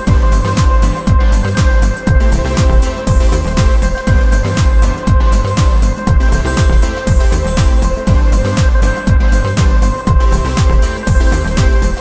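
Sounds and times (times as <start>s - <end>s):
electronic music with thumping beat: 0.0s - 12.0s.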